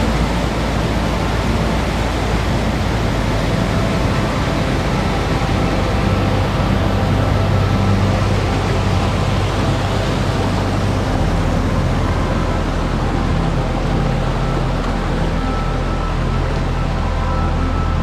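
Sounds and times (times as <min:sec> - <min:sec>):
low sustained tones: 0:00.0 - 0:18.0
waterfall rushing: 0:00.0 - 0:18.0.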